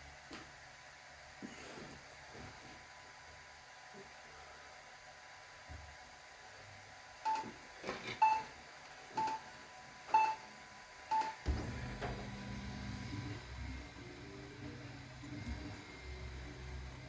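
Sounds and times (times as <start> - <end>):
low steady hum: 0.0 - 17.0
keypad beeps: 7.3 - 7.5, 8.2 - 8.5, 10.1 - 10.4.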